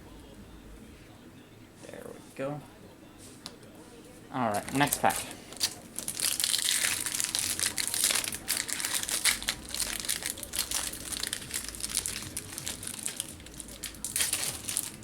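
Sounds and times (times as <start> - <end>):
foil wrapper crinkling: 4.5 - 15.0.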